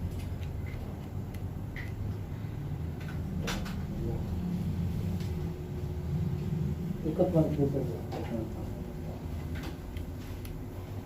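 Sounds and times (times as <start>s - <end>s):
low room hum: 0.0s - 11.0s.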